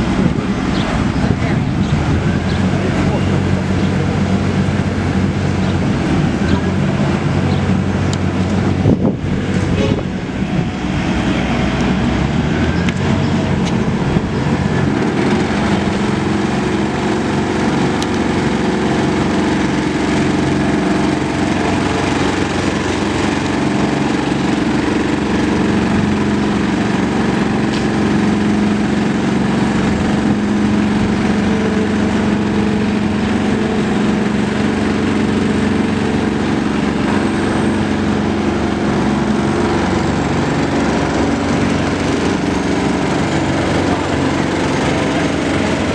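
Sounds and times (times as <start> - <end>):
machinery engine droning: 0.0 - 45.9.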